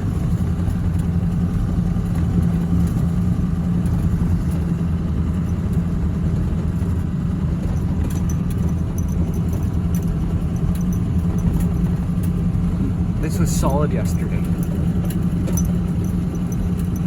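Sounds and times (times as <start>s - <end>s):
pickup truck engine and road hum: 0.0s - 17.0s
light clicks and rattles: 7.6s - 17.0s.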